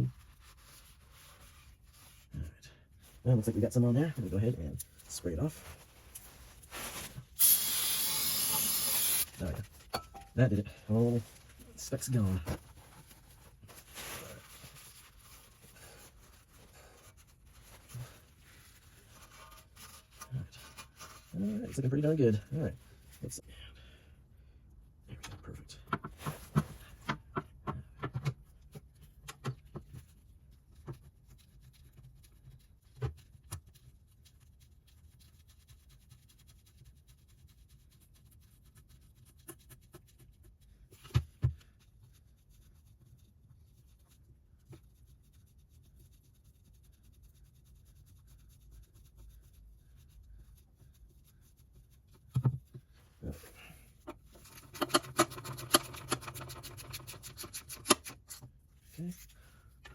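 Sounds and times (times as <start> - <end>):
parts and tools clicking: 54.4 - 58.2.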